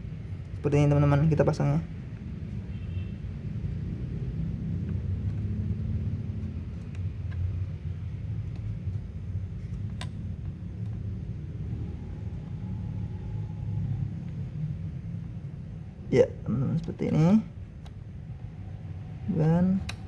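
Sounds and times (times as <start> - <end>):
steady low rumble: 0.0 - 20.0
small clicks: 4.8 - 11.1.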